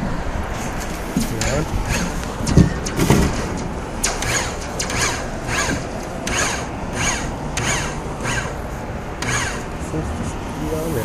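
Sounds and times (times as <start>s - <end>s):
ratchet wrench clicking: 4.0s - 8.6s, 9.2s - 9.7s.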